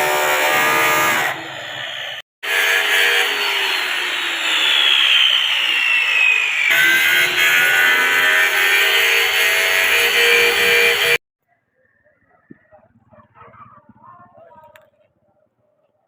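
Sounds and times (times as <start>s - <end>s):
power tool whining: 0.0s - 11.2s.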